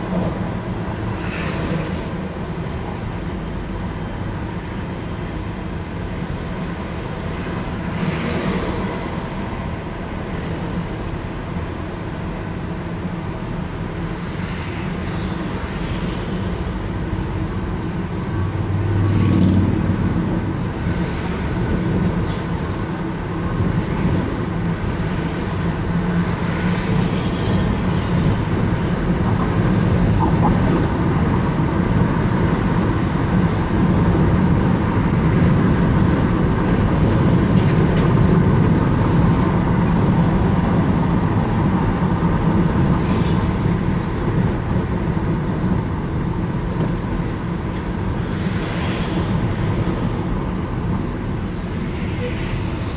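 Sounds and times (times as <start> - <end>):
car road and engine rumble: 0.0 - 52.9
low drone: 51.2 - 52.9.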